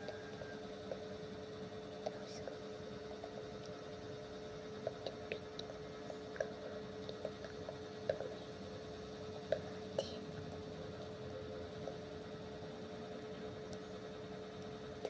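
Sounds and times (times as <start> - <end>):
faint electrical hum: 0.0 - 15.0.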